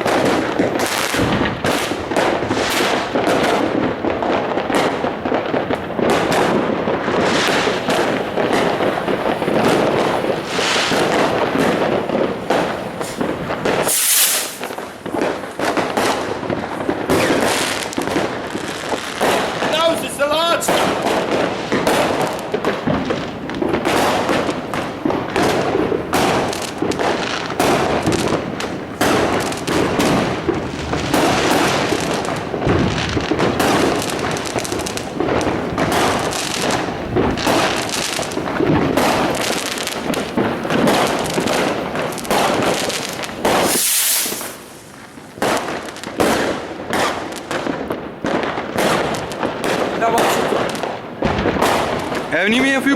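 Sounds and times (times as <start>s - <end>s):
firecracker crackling: 0.0s - 52.9s
fireworks banging: 0.0s - 52.9s
hissing whoosh: 13.8s - 14.7s, 43.6s - 44.9s.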